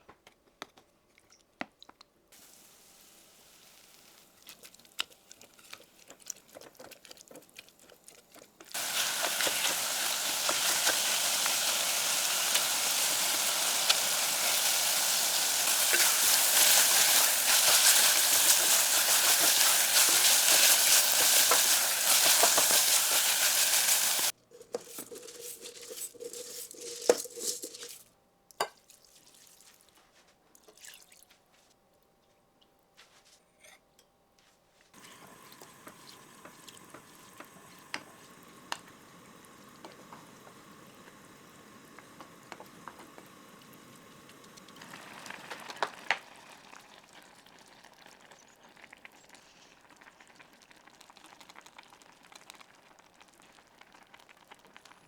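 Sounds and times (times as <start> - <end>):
food sizzling in a pan: 2.4 - 5.7, 8.7 - 28.0, 35.0 - 55.0.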